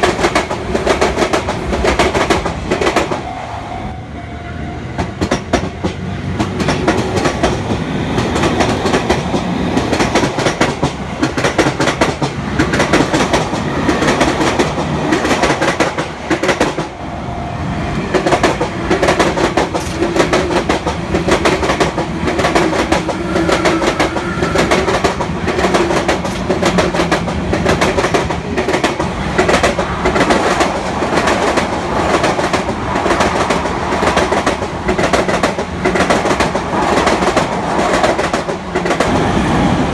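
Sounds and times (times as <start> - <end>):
train wheels clattering over rail joints: 5.0 - 16.9.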